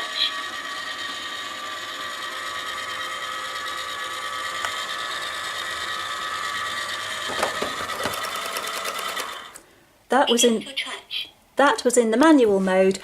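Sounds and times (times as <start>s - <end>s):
robot vacuum cleaner whining: 0.0s - 9.6s.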